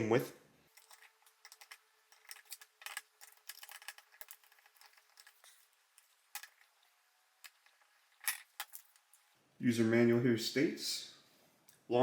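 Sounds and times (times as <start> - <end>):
batteries clicking in plastic compartment: 0.8 - 6.7.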